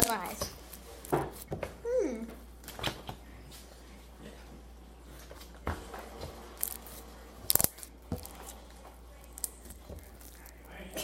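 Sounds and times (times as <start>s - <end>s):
slime crackling and clicking: 7.5s - 8.4s.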